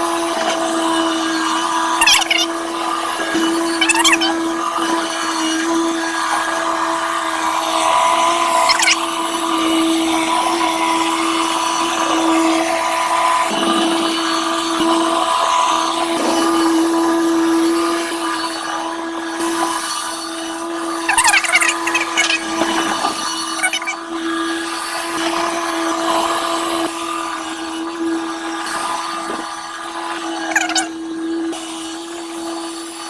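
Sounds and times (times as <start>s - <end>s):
small engine running: 0.0s - 33.0s
high squeaks: 1.9s - 2.6s, 3.4s - 4.5s, 8.5s - 9.0s, 20.9s - 24.1s, 30.4s - 31.0s.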